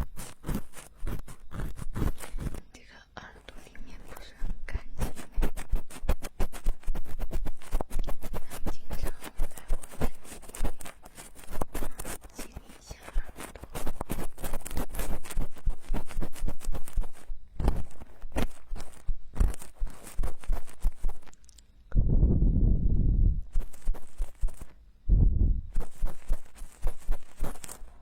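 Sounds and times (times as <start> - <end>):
ear-cleaning tools scraping: 0.0 - 2.6, 5.0 - 21.5.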